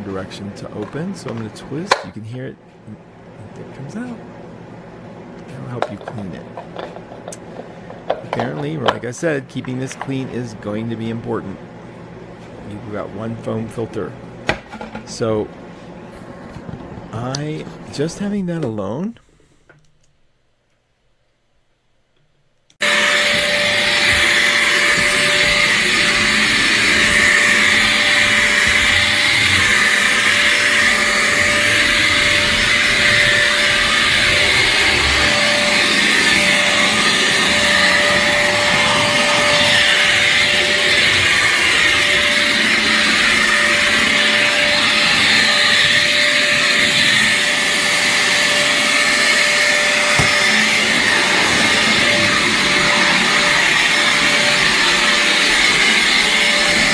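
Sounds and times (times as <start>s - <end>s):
upright vacuum cleaner running: 22.8s - 56.9s.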